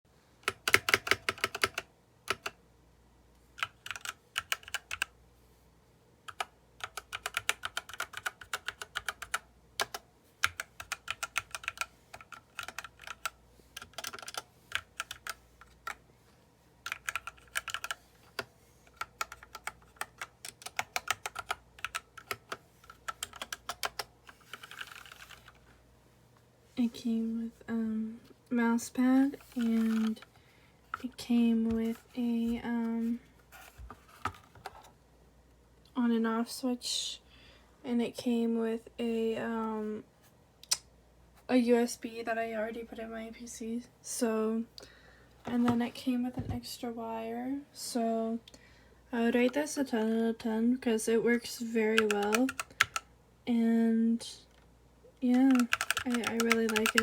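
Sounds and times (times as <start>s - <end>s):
mechanical keyboard typing: 0.4s - 2.6s, 3.6s - 5.1s, 6.3s - 16.0s, 16.8s - 25.6s, 29.4s - 30.2s, 51.9s - 53.1s, 55.3s - 57.0s.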